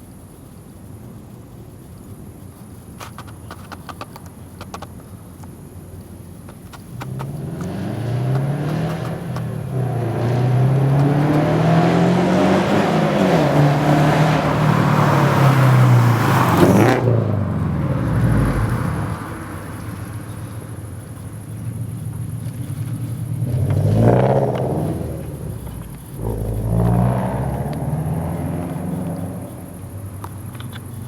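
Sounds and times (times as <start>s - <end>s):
car engine accelerating hard: 6.8s - 31.0s.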